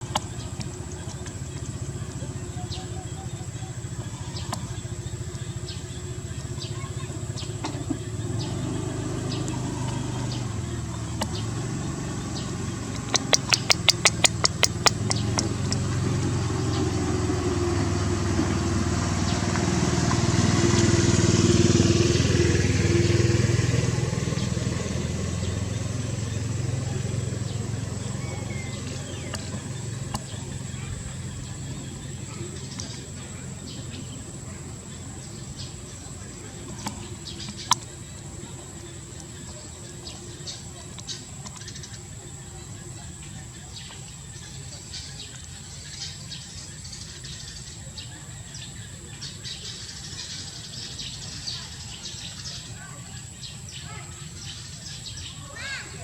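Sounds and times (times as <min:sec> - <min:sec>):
low engine rumble: 0:00.0 - 0:56.0
sharp clicks: 0:09.2 - 0:16.8.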